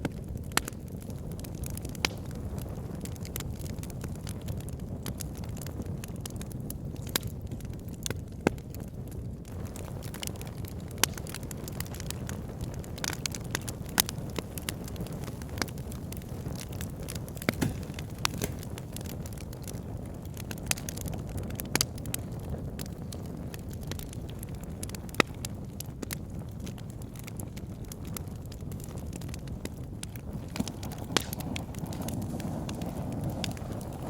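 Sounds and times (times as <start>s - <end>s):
fire crackling and popping: 0.0s - 34.0s
low rumble of flames: 0.0s - 34.0s.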